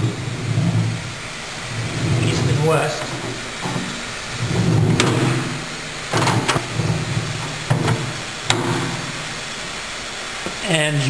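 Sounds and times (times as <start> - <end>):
clamp sliding along frame rumble: 0.0 - 9.8
sharp metal clunks: 4.9 - 6.7, 7.4 - 9.2.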